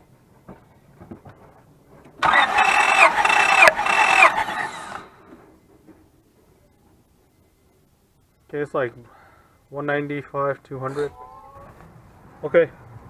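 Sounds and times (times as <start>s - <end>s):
starter motor cranking engine: 2.2s - 5.2s.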